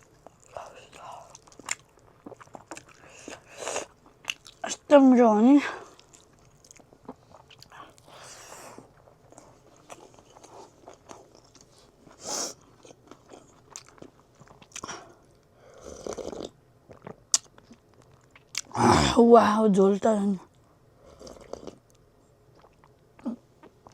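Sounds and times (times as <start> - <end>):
chewing with mouth clicks: 0.0 - 4.8, 5.9 - 8.2, 8.8 - 15.4, 16.0 - 18.8, 21.2 - 23.9.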